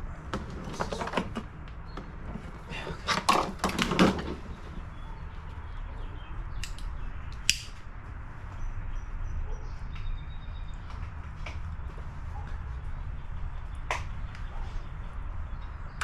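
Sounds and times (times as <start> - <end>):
sharp click: 6.6 - 7.8.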